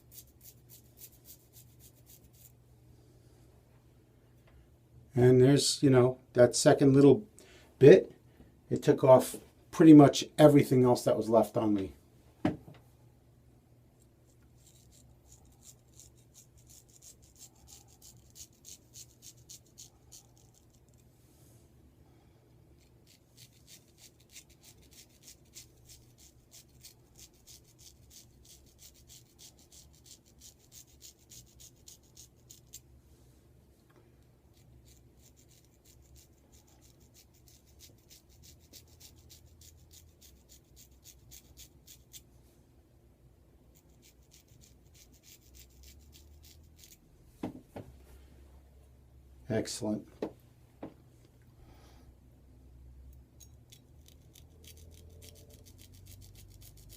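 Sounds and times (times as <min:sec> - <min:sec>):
straight razor scraping stubble: 0:14.6 - 0:21.0, 0:22.8 - 0:32.8, 0:43.8 - 0:47.0, 0:53.7 - 0:56.9.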